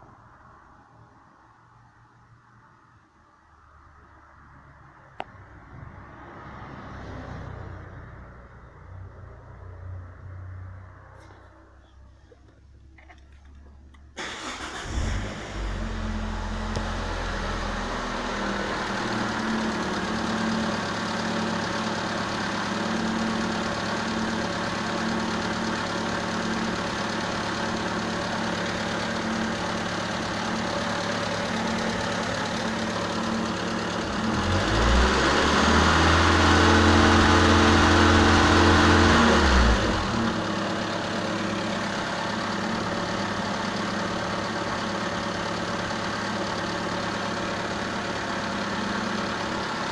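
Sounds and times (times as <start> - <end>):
car engine starting and idling: 10.8 - 49.9
car engine revving: 14.2 - 46.2.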